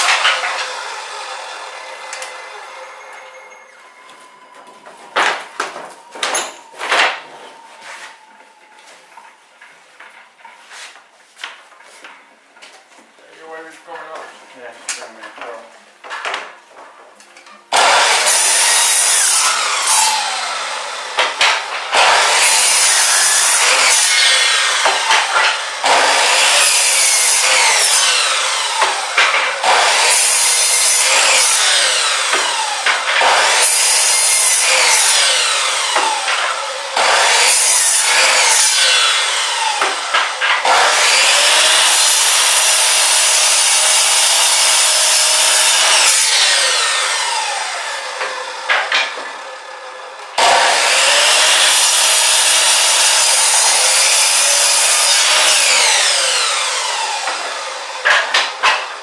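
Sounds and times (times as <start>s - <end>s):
chop saw cutting wood: 0.0s - 3.1s, 17.7s - 49.7s, 50.4s - 59.0s.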